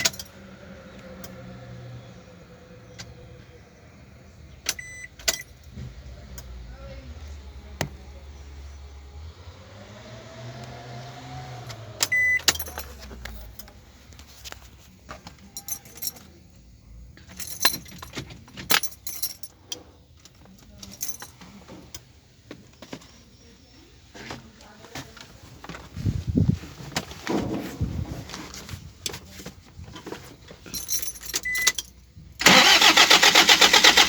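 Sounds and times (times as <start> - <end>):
short beep: 12.1 - 12.4
metallic clinks and jingles: 15.5 - 16.4, 17.2 - 21.5, 30.6 - 32.1.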